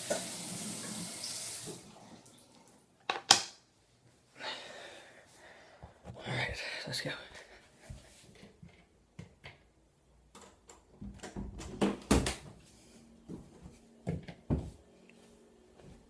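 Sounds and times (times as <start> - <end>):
objects knocking and clunking: 3.0 - 3.6.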